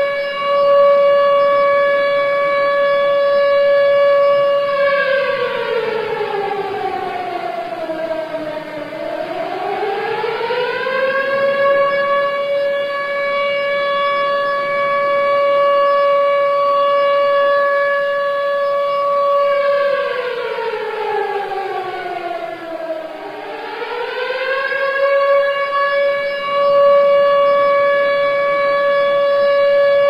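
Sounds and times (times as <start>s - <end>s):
civil defense siren: 0.0s - 30.0s.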